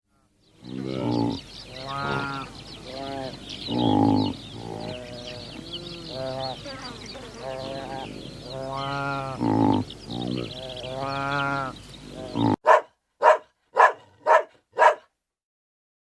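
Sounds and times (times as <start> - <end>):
sheep bleating: 0.7 - 12.6
dog barking: 12.6 - 15.1.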